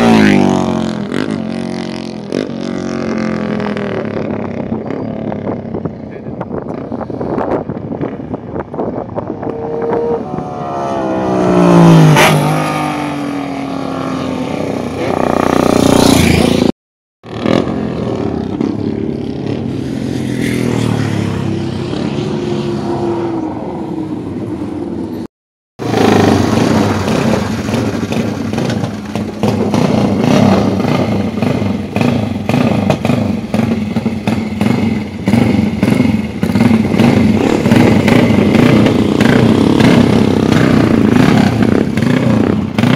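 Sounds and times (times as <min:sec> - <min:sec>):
racing motorcycle passing: 0:00.0 - 0:16.7, 0:17.3 - 0:42.9
motorcycle engines pulsing exhaust: 0:00.0 - 0:25.2, 0:25.8 - 0:42.9.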